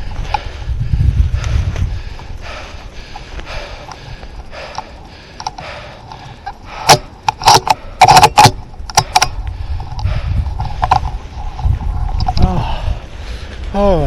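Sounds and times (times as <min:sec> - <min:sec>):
sharp clicks and knocks: 0:04.6 - 0:11.2.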